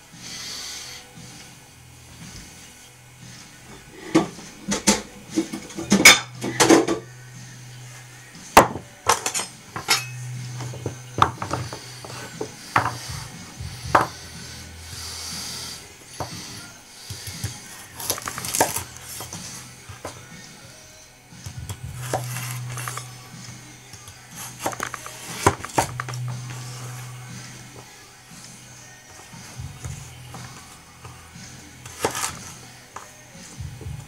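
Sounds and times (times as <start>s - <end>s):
knife blade clinking and scraping: 9.2s - 10.8s.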